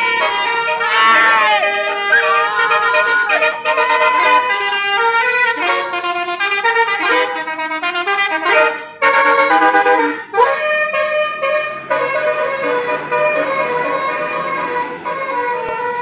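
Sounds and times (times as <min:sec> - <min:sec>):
multi-tone bus horn melody: 0:00.0 - 0:16.0.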